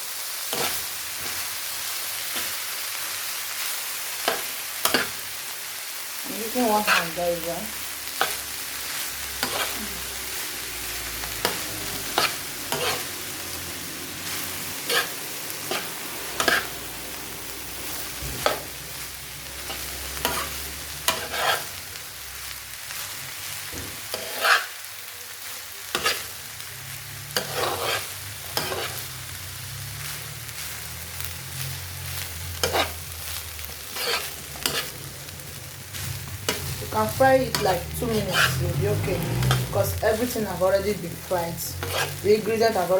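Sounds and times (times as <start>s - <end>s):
rice sizzling in a pot: 0.0s - 42.9s
utensil scraping a pot: 12.2s - 13.1s, 14.9s - 16.7s, 21.1s - 21.7s, 27.4s - 29.0s, 37.5s - 38.7s, 41.8s - 42.2s.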